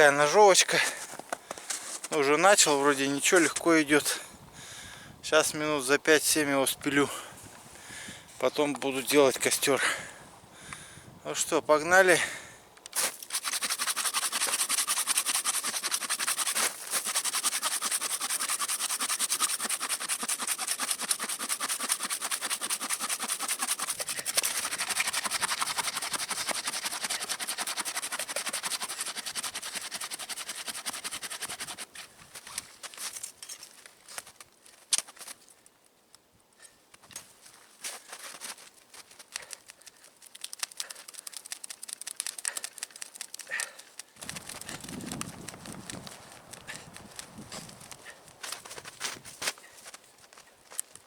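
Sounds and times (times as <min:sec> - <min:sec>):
hand saw cutting wood: 0:13.0 - 0:32.0.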